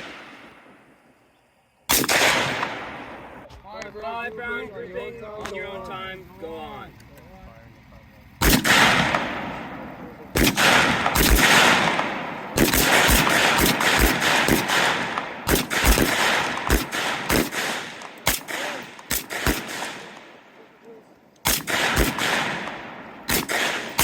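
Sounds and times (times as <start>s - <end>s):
rifle shots with echo: 0.0s - 0.9s, 1.9s - 3.5s, 8.4s - 20.8s, 21.4s - 24.0s.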